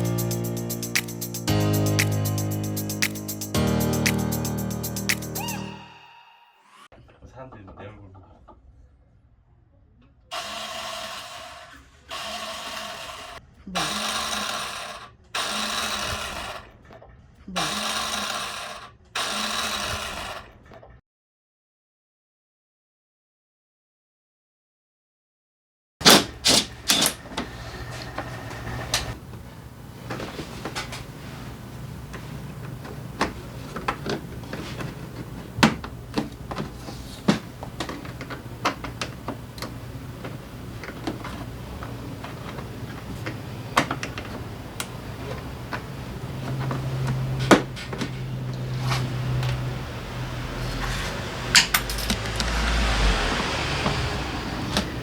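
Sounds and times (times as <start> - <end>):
electric starter motor whirring: 10.3 - 16.6, 17.6 - 20.5, 37.4 - 55.0.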